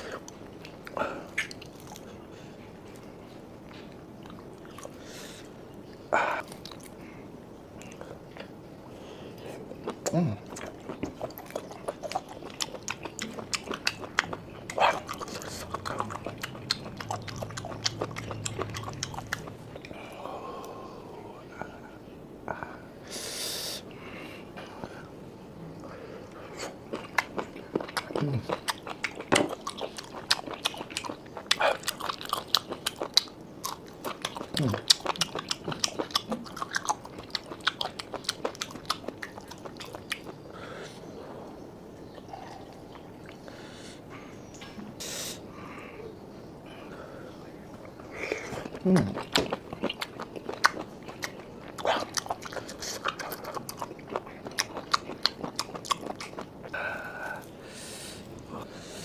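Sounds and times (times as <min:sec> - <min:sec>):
person chewing: 0:00.0 - 0:05.6, 0:06.2 - 0:07.0, 0:09.3 - 0:21.0, 0:26.6 - 0:40.5, 0:47.8 - 0:57.6.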